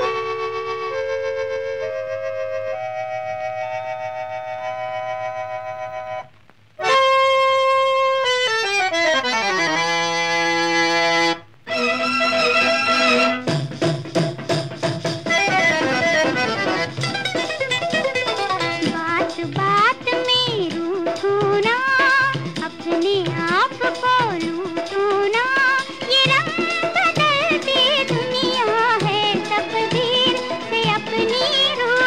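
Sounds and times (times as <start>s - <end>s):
accordion chord and run: 0.0s - 20.3s
sustained instrumental notes: 0.0s - 20.3s
rhythmic ensemble with percussion: 9.4s - 32.0s.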